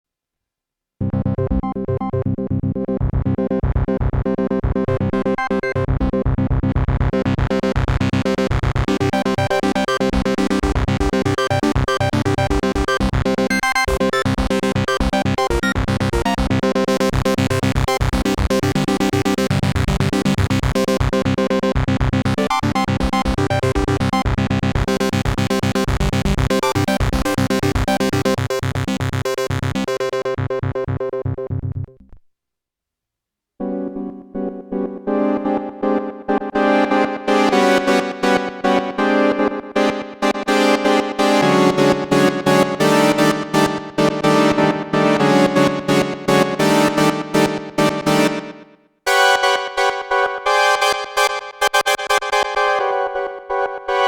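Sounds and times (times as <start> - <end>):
synthesizer fast repeating notes: 33.6 - 54.0.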